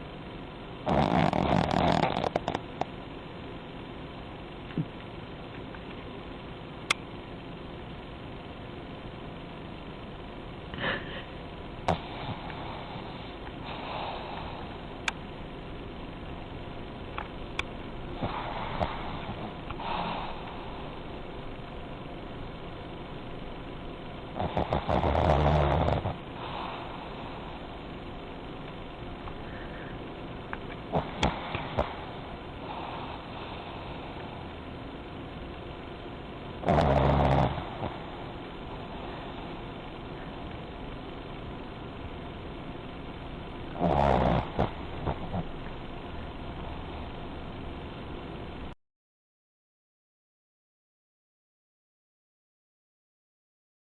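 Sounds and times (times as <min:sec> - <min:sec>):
dog snoring: 0:00.8 - 0:02.9, 0:11.8 - 0:14.9, 0:18.1 - 0:21.1, 0:24.3 - 0:27.9, 0:30.9 - 0:34.5, 0:36.6 - 0:39.9, 0:43.7 - 0:45.7.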